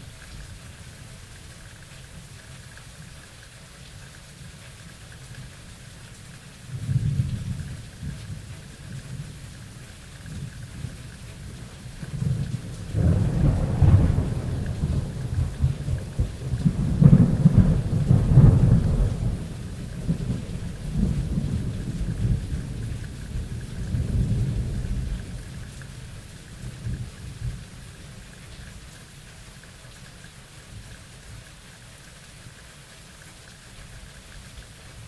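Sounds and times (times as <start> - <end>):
heavy rain: 0.0 - 35.0
rolling thunder: 12.0 - 25.8.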